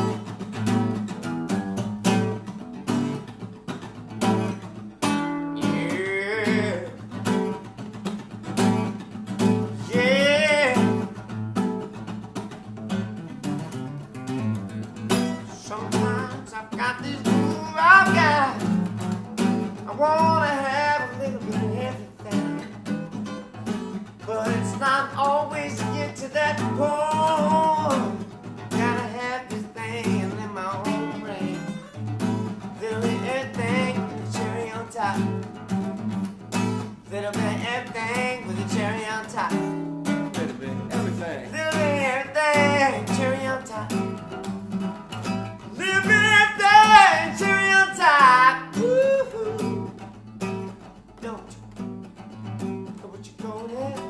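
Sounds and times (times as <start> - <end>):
guitar playing: 0.0 - 54.0
person singing: 5.5 - 7.1, 9.6 - 11.2, 15.4 - 18.8, 19.8 - 22.8, 24.2 - 32.0, 32.7 - 35.4, 37.1 - 44.2, 45.6 - 49.9, 53.0 - 54.0.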